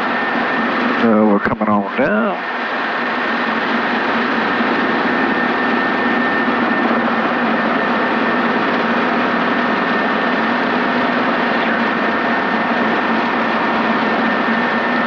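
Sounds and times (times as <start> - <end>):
helicopter engine and rotor drone: 0.0 - 15.0.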